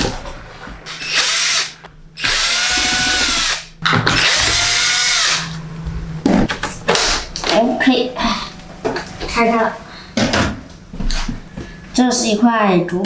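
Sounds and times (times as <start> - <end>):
electric screwdriver motor: 1.0 - 5.6.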